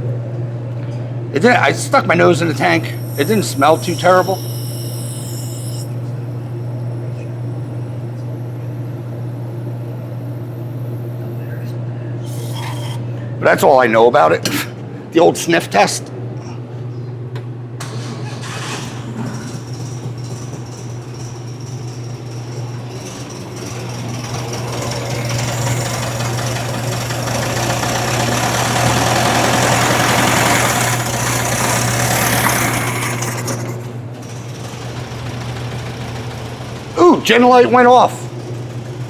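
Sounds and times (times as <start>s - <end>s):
car engine running: 1.6s - 11.6s, 17.8s - 33.6s, 34.2s - 39.0s.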